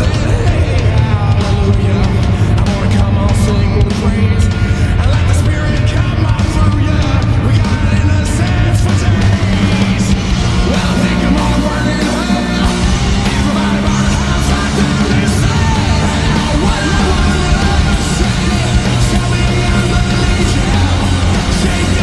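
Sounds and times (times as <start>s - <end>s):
distorted guitars: 0.0s - 22.0s
drums: 0.0s - 22.0s.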